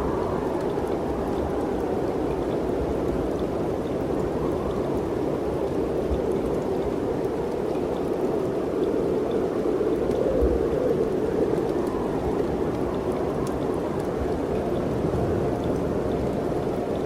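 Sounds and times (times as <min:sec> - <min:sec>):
wind blowing: 0:00.0 - 0:17.0
faint ticks: 0:00.4 - 0:17.0.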